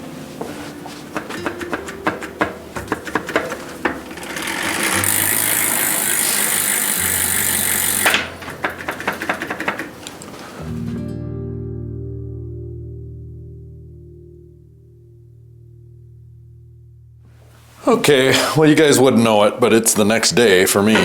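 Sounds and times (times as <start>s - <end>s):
clicks and rattles on bicycle: 1.1s - 10.4s.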